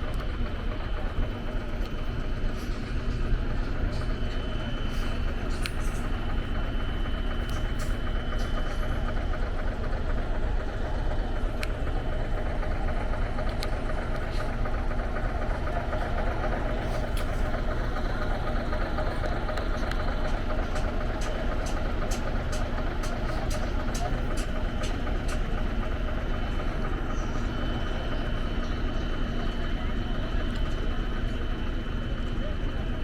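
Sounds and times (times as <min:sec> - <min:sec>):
engines idling: 0:00.0 - 0:33.0.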